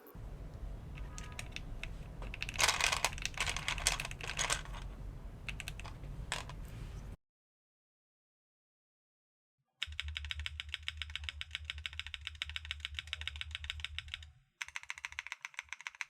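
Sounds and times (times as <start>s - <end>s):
mechanical keyboard key clacks: 0.3s - 6.6s, 9.8s - 16.0s.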